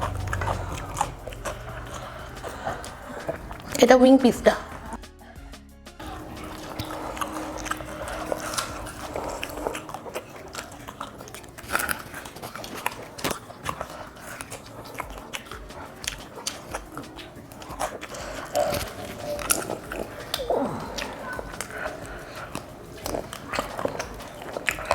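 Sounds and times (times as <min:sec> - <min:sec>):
crunchy chewing: 0:00.0 - 0:24.9.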